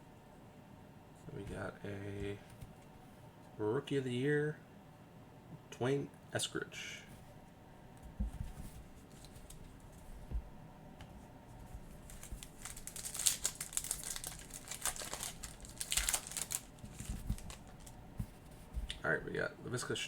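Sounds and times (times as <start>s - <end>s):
plastic wrapper tearing and crinkling: 12.0s - 18.0s.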